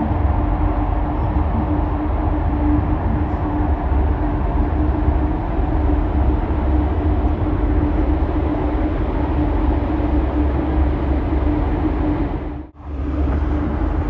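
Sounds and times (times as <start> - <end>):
low engine rumble: 0.0 - 14.0.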